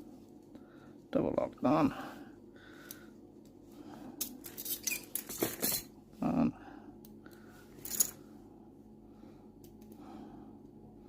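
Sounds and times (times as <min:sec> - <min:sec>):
handcuffs clicking and rattling: 0:04.2 - 0:05.9, 0:07.8 - 0:08.2.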